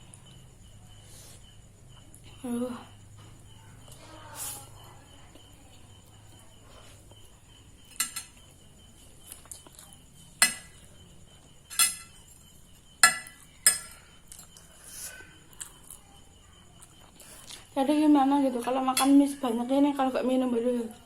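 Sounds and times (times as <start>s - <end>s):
metal spoon clinking on plate: 7.9s - 8.4s, 10.4s - 10.8s, 11.7s - 12.4s, 13.0s - 14.4s.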